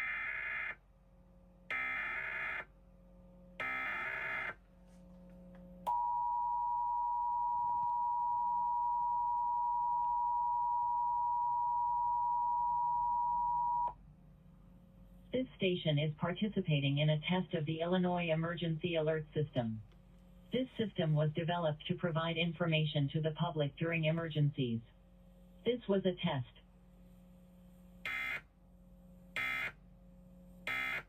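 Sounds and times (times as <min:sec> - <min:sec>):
steady two-tone beep: 0:05.9 - 0:13.9.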